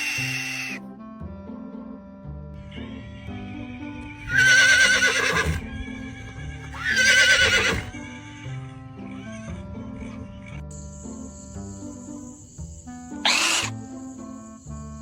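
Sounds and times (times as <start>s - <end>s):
animal quavering calls: 0.0s - 0.8s, 4.3s - 5.6s, 6.7s - 8.0s, 13.2s - 13.8s
background music: 0.0s - 15.0s.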